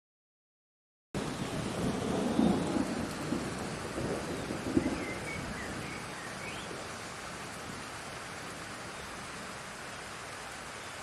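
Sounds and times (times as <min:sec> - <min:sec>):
low rumble of thunder: 0:01.2 - 0:09.6
steady rain: 0:01.2 - 0:11.0.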